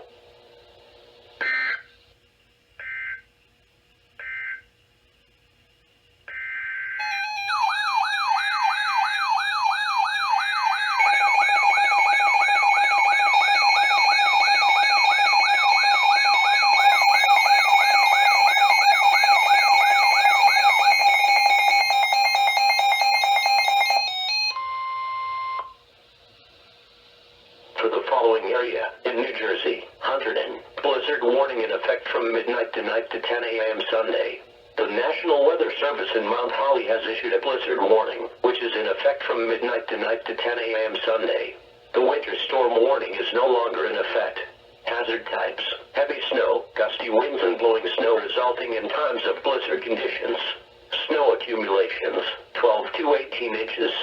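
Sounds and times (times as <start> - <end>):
warbling alarm over steady tones: 1.4 - 1.9, 2.8 - 3.3, 4.2 - 4.7, 6.3 - 25.9
screechy digital data bursts: 6.8 - 24.6.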